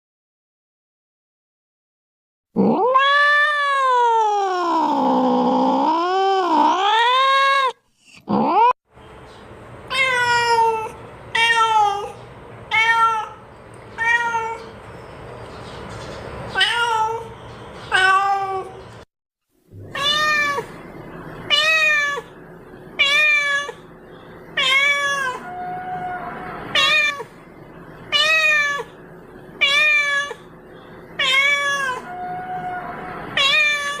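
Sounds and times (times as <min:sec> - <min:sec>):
cat meowing: 0:02.6 - 0:08.7, 0:09.9 - 0:13.4, 0:14.0 - 0:14.8, 0:16.6 - 0:17.3, 0:17.9 - 0:18.8, 0:19.8 - 0:20.8, 0:21.5 - 0:22.3, 0:23.0 - 0:23.9, 0:24.6 - 0:27.4, 0:28.1 - 0:29.0, 0:29.6 - 0:30.5, 0:31.2 - 0:34.0.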